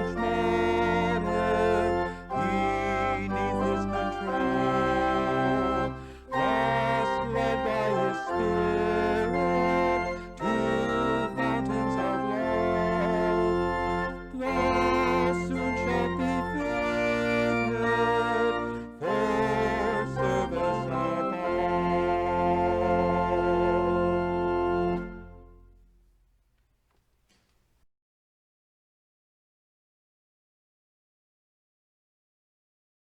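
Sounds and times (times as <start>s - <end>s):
organ chords: 0.0s - 26.0s.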